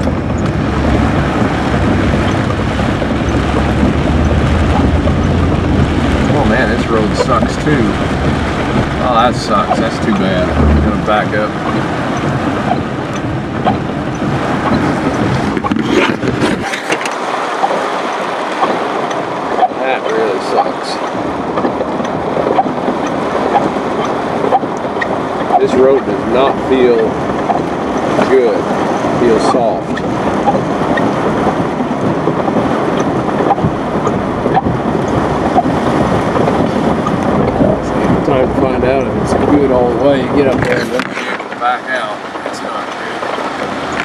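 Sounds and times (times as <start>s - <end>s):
vehicle engine and road rumble: 0.0s - 44.0s.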